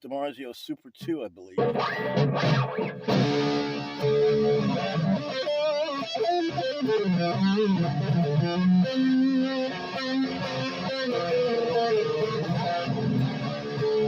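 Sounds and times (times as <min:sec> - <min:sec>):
electric guitar lead lines: 0:01.6 - 0:14.0.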